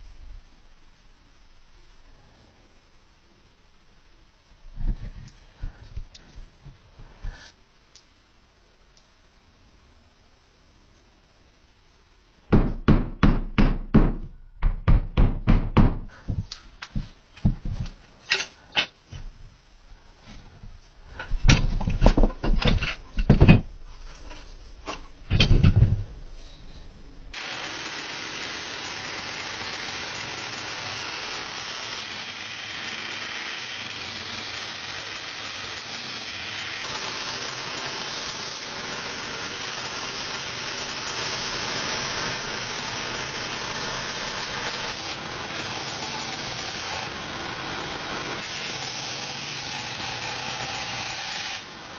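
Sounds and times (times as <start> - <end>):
loud knocks: 12.5 - 17.9
grinding on steel blade: 48.0 - 51.6.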